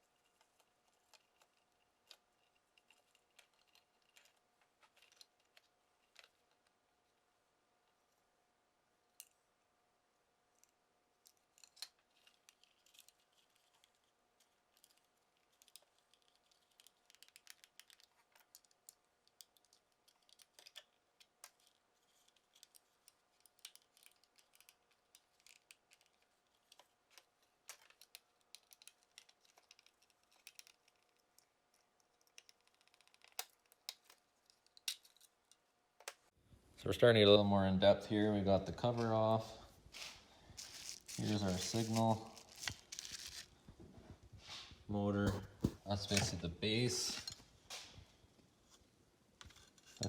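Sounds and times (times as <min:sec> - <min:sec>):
hand tools clicking on plastic: 0:10.6 - 0:36.3.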